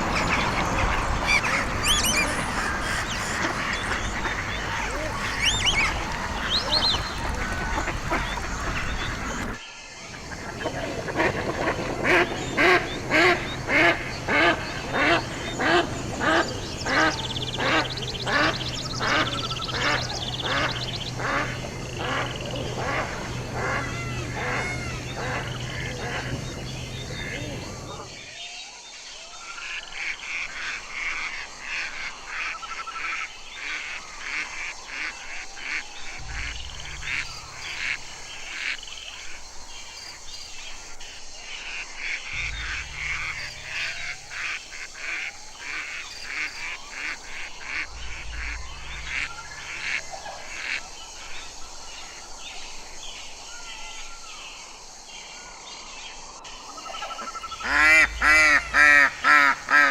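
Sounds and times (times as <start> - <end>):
loud harsh quacks: 0.0 - 9.6, 12.0 - 28.2, 42.3 - 50.8, 57.6 - 59.9
low rumble: 0.0 - 28.2, 35.8 - 40.9, 42.3 - 52.3, 57.4 - 59.9
ducks calling: 0.0 - 28.3, 29.8 - 53.5, 56.5 - 59.9.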